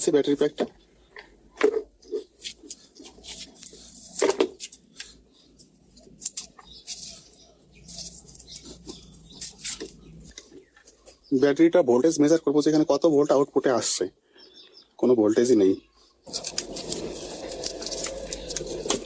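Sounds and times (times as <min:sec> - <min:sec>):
rustling: 0:00.4 - 0:11.4, 0:15.9 - 0:19.0.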